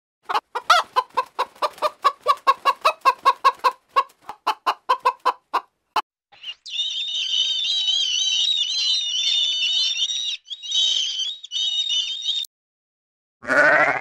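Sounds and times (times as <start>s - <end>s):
chicken clucking: 0.2s - 5.7s.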